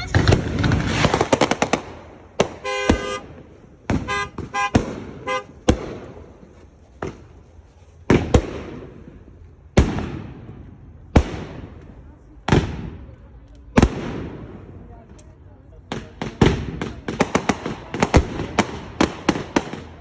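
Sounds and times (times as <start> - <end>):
fireworks bangs with echo: 0.0 - 7.4, 8.0 - 20.0
car horn short toots: 2.6 - 3.3, 4.0 - 5.6.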